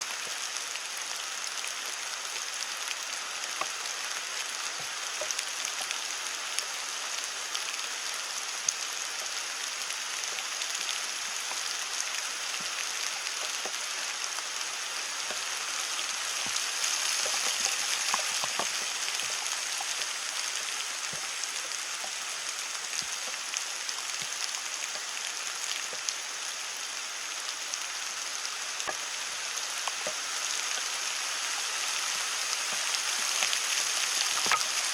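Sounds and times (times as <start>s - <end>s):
heavy rain on leaves: 0.0s - 34.9s
raindrops clicking sharply: 32.6s - 34.9s.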